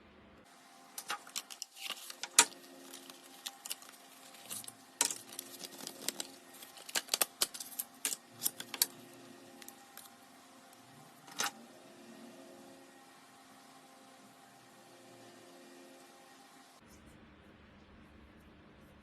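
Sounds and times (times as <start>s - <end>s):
cardboard and plastic packaging crinkling: 1.0s - 10.1s.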